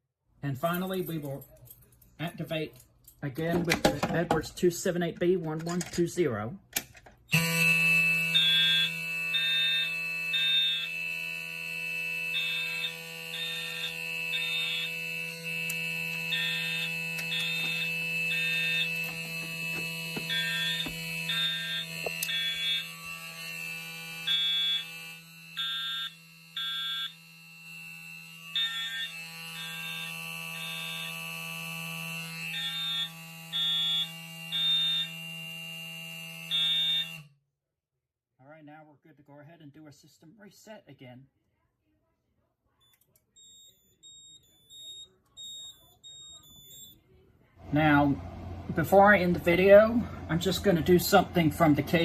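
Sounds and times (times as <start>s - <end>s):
alarm horns beeping: 7.3s - 37.3s, 42.8s - 47.0s
steady buzzing fire alarm horn: 7.3s - 37.4s, 42.8s - 47.0s.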